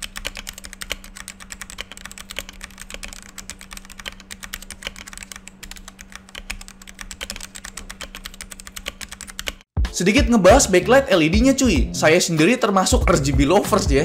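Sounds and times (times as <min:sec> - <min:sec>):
mechanical keyboard typing: 0:00.0 - 0:09.7.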